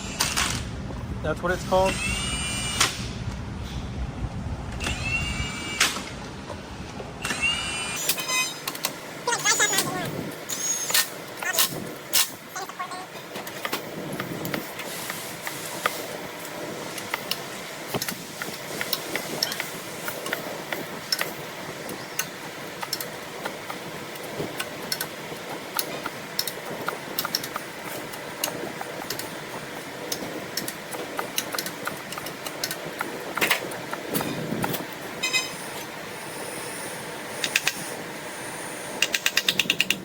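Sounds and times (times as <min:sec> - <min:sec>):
steady background noise: 0:00.0 - 0:40.0
metal parts clicking and knocking: 0:18.8 - 0:29.4, 0:30.1 - 0:34.8.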